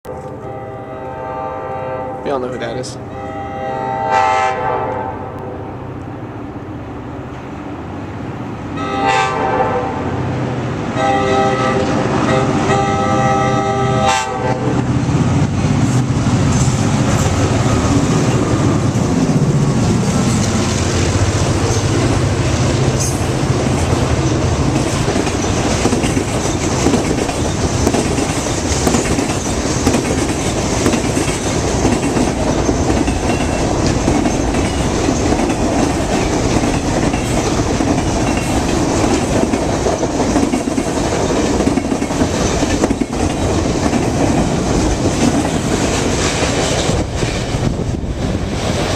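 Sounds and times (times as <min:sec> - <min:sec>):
locomotive air horn blasts: 0:00.1 - 0:02.3, 0:03.1 - 0:05.6, 0:08.8 - 0:10.1, 0:11.0 - 0:14.7
freight cars clacking over rail joints: 0:23.0 - 0:47.5.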